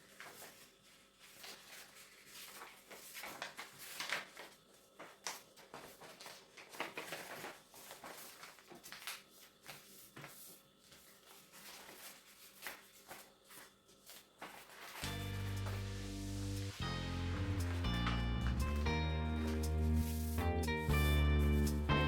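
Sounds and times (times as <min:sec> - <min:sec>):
paper rustling and creasing: 0:00.0 - 0:16.0, 0:17.3 - 0:21.9
music: 0:15.0 - 0:22.0.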